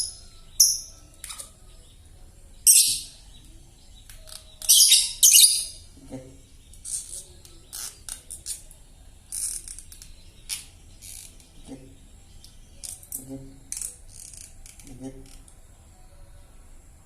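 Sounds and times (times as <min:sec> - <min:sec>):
lovebird chattering harshly: 0:02.7 - 0:03.1, 0:04.6 - 0:05.8.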